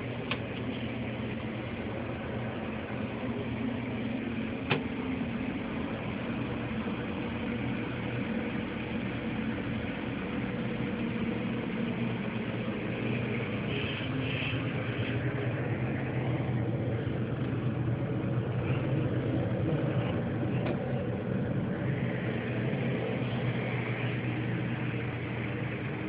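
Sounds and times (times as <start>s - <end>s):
low mechanical hum: 0.0s - 26.0s.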